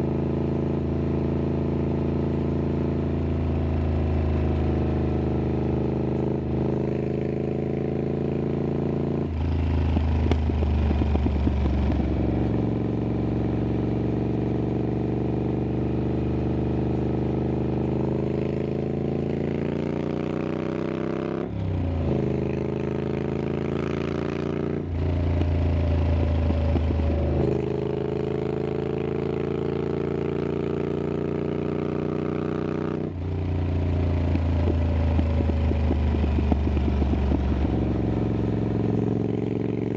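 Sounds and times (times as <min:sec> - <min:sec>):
motorcycle engine revving while riding: 0:00.0 - 0:39.9.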